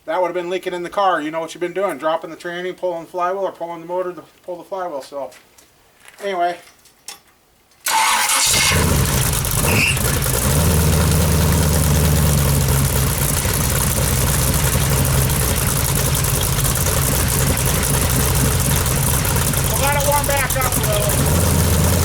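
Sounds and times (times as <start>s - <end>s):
engine idling: 7.9s - 22.0s.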